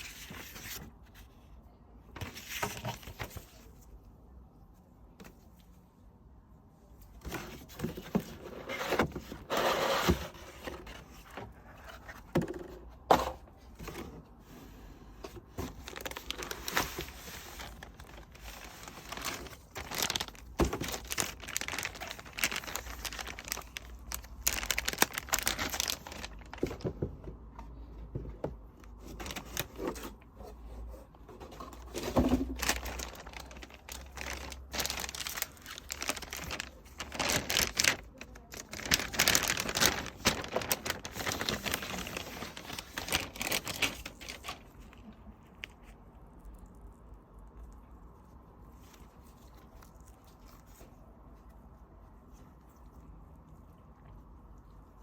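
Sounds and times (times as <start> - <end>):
wrapping crinkling and tearing: 15.4 - 26.8, 28.9 - 30.2, 31.8 - 51.5.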